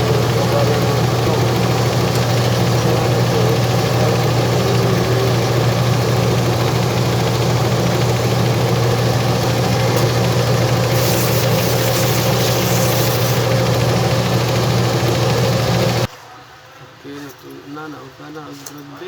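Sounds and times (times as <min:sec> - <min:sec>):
machine humming: 0:00.0 - 0:16.1
hissing noise: 0:10.8 - 0:13.8.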